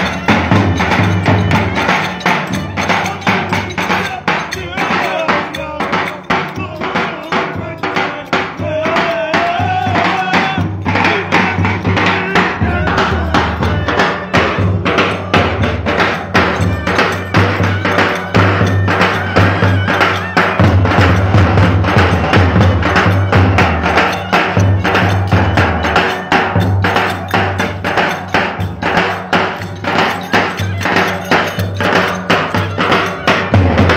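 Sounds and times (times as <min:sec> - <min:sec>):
bass drum beating fast rhythm: 0:00.0 - 0:33.9
sharp clacking percussion: 0:00.0 - 0:33.9
wavering melody line: 0:10.5 - 0:33.9.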